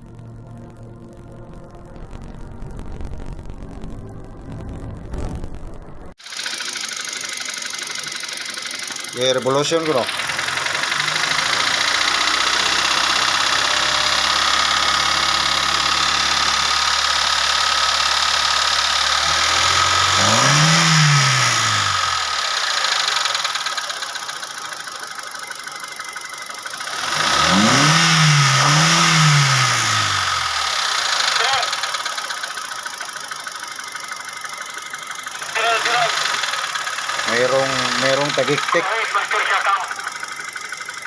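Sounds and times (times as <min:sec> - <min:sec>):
car engine idling with tick: 0:00.0 - 0:05.0, 0:05.6 - 0:41.0
engine revving: 0:00.0 - 0:25.0, 0:25.6 - 0:41.0.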